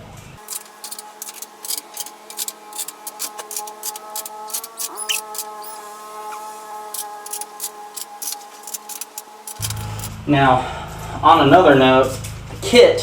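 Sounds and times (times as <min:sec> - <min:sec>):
bolts and washers clicking: 0:00.4 - 0:06.4, 0:07.0 - 0:10.1
faint steady whine: 0:00.4 - 0:11.2.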